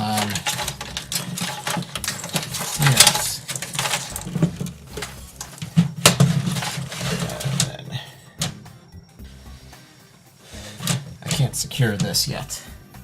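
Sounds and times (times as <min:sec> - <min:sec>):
plastic parts clicking: 0:00.0 - 0:07.8, 0:10.8 - 0:12.2
cables rustling: 0:00.0 - 0:08.7, 0:10.4 - 0:12.4.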